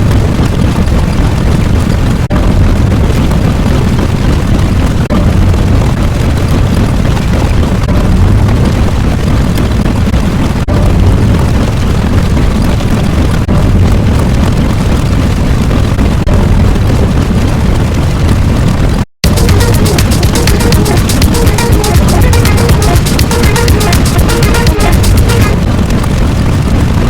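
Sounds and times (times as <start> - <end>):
rumbling explosion: 0.0 - 20.1, 25.5 - 27.0.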